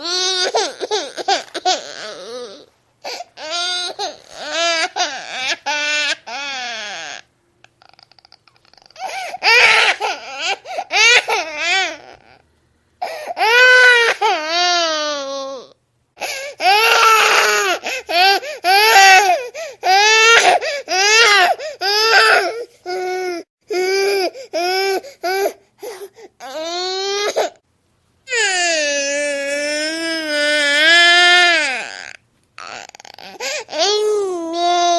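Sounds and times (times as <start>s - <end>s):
baby crying: 0.0s - 12.4s, 13.0s - 27.6s, 28.3s - 34.9s
baby gasping: 33.2s - 33.7s.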